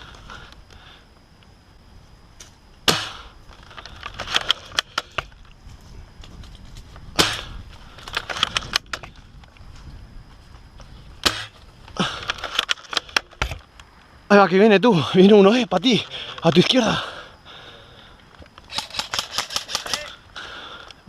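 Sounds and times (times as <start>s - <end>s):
spring rifle shots: 18.7s - 20.1s.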